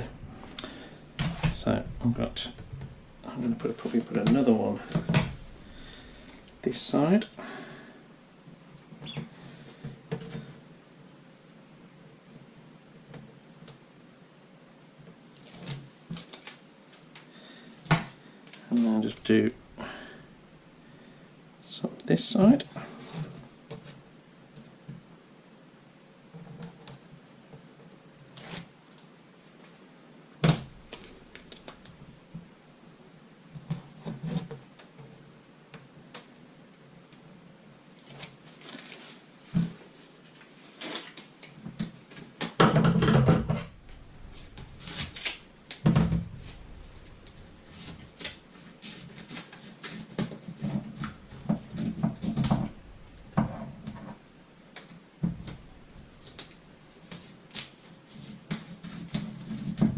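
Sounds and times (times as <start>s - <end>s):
tape rustling: 30.4s - 32.4s, 37.9s - 42.5s, 43.6s - 59.9s.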